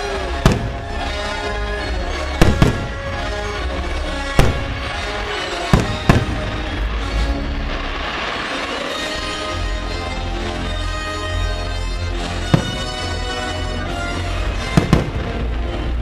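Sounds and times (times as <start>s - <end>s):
fireworks bursting in sharp bangs: 0.0s - 1.6s, 2.3s - 3.6s, 4.2s - 9.5s, 12.4s - 16.0s
music: 0.0s - 16.0s.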